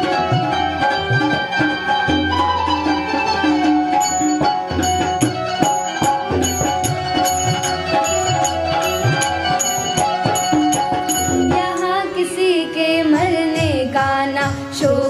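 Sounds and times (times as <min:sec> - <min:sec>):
sustained melody: 0:00.0 - 0:14.2
steady percussion beat: 0:03.7 - 0:11.9.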